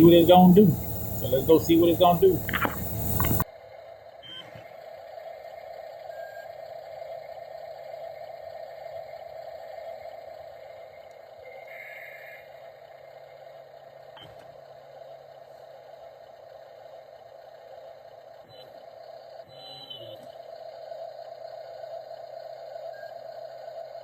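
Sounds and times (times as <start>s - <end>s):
small electric motor whine: 0.0s - 3.4s.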